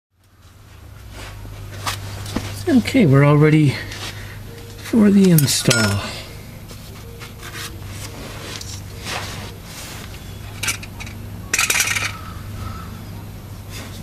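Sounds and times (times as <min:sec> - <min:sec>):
metal parts clinking and scraping: 0:04.8 - 0:06.1, 0:10.4 - 0:12.2.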